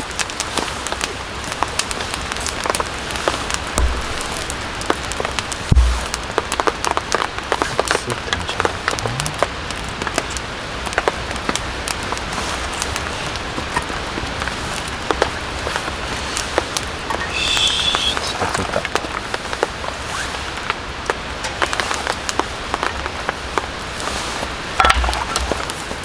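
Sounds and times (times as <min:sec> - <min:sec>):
steady rain: 0:00.0 - 0:26.0
low thump: 0:03.8 - 0:04.6, 0:05.7 - 0:06.3.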